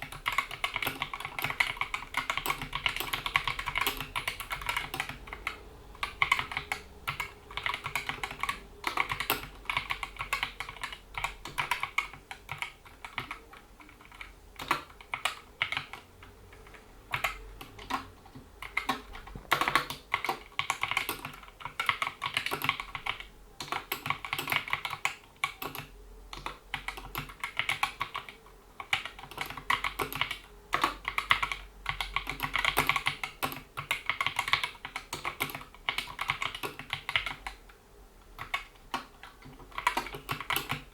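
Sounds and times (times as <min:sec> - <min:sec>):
mechanical keyboard typing: 0:00.0 - 0:37.7, 0:38.4 - 0:40.9.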